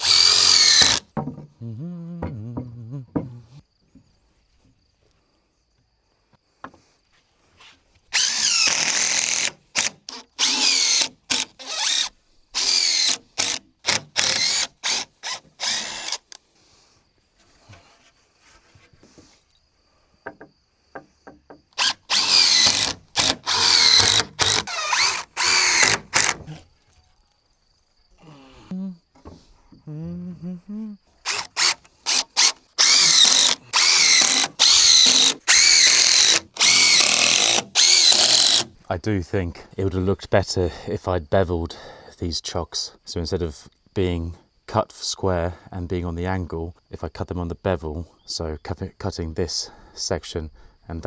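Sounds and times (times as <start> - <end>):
power drill bursts: 0.0 - 1.0, 8.2 - 16.4, 21.8 - 26.5, 31.3 - 38.7.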